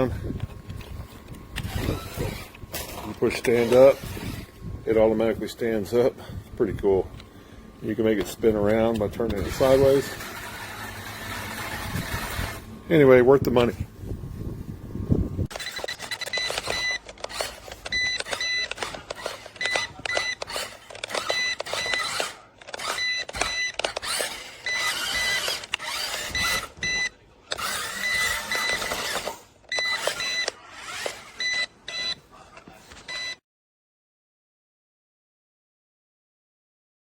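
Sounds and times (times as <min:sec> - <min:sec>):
toy truck motor whine: 0:00.8 - 0:04.6, 0:08.2 - 0:12.8, 0:15.5 - 0:32.2.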